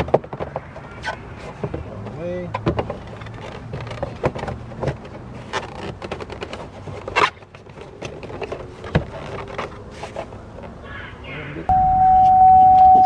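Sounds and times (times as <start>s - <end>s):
plastic trim clicks and scrapes: 2.5s - 10.3s.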